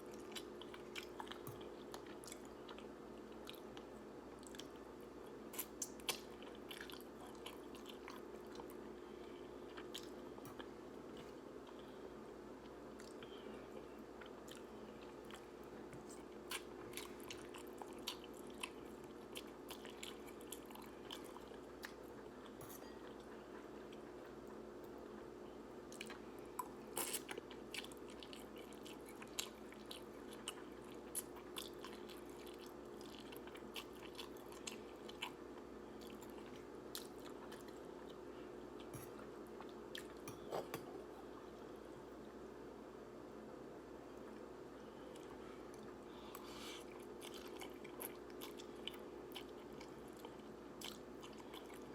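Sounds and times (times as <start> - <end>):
faint steady hum: 0.0 - 51.9
chewing noodles: 25.9 - 40.9, 45.1 - 51.9.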